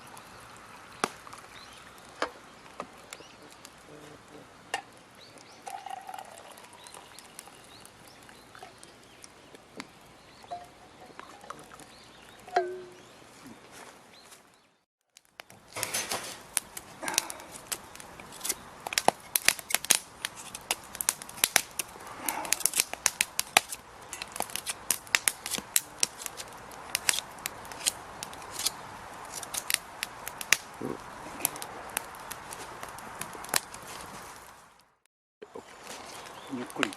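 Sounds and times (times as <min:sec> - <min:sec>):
campfire crackling and popping: 0:00.0 - 0:13.3, 0:15.1 - 0:36.9.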